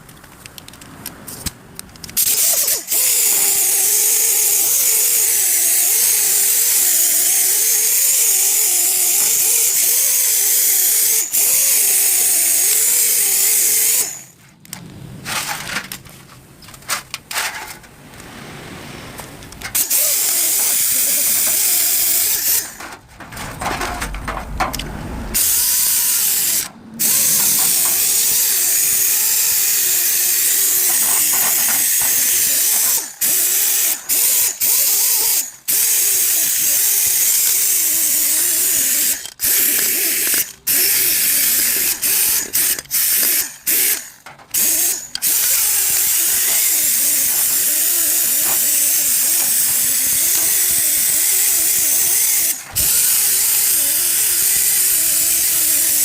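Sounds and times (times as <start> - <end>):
loud steady hiss: 19.8 - 22.9, 44.6 - 56.0.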